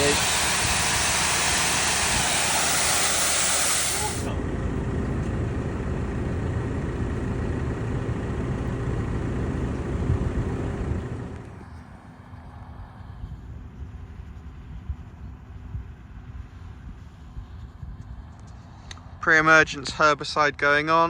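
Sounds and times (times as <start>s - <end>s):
wind hissing on microphone: 0.0s - 4.3s
tractor engine rumbling: 0.0s - 11.8s.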